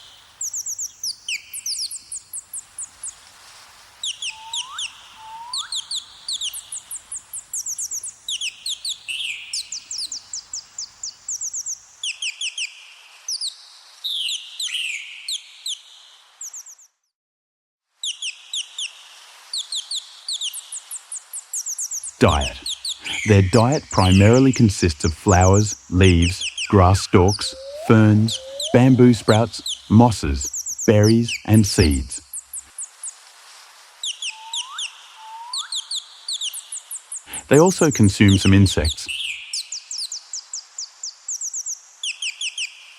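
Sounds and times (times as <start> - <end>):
small birds chirping: 0.0 - 3.2, 4.0 - 17.0, 18.0 - 33.2, 34.0 - 42.9
lower rising bird whistles: 4.2 - 6.0, 26.3 - 29.9, 34.2 - 35.9.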